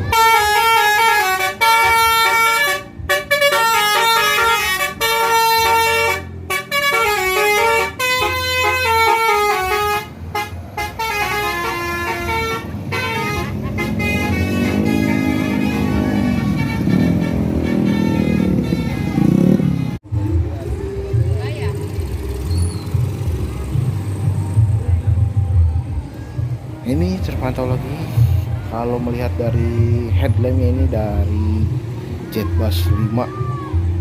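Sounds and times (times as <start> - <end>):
bus horn playing a melodic tune: 0.0 - 20.0
bus engine revving: 0.0 - 21.0, 21.6 - 26.7.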